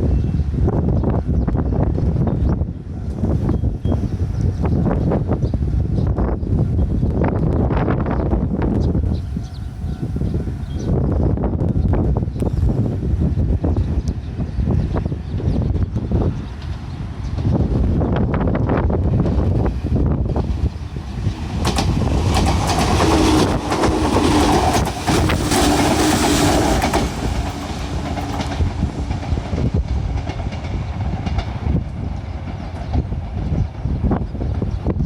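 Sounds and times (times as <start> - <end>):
train humming tone: 0.0 - 35.0
wind rumbling on microphone: 0.0 - 35.0
electric train passing: 7.7 - 34.9
wheels clacking over rail joints: 21.0 - 31.8.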